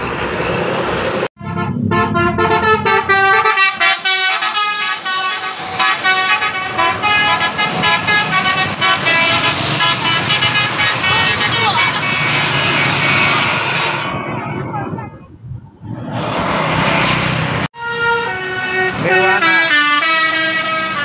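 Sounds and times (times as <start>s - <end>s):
bus engine rumbling: 0.0s - 21.0s
multi-tone air horn melody: 1.4s - 14.1s, 17.8s - 21.0s.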